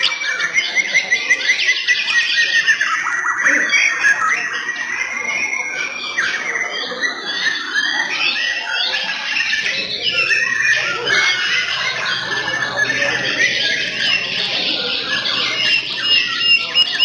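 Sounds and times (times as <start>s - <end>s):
birds singing whistled phrases: 0.0s - 17.0s.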